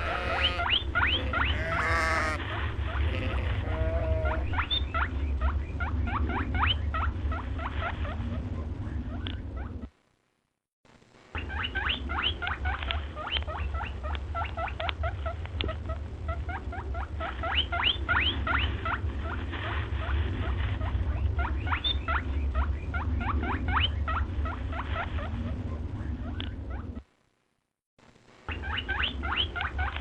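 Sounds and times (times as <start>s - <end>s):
small animal squeaking: 0.0s - 8.4s
low rumble: 0.0s - 9.9s, 15.0s - 27.0s.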